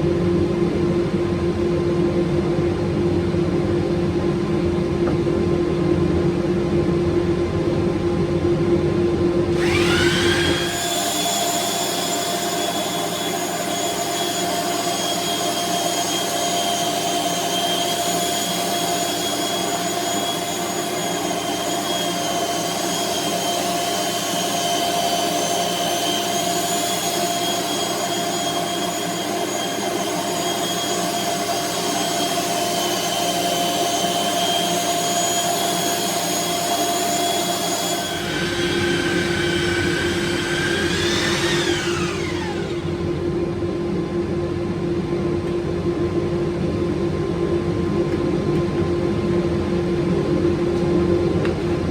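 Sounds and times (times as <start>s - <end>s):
belt sander sanding wood: 9.6s - 43.3s.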